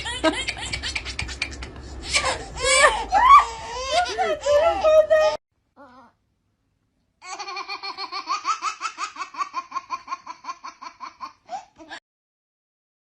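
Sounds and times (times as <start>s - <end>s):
baby laughing: 0.0s - 5.4s, 7.2s - 12.0s.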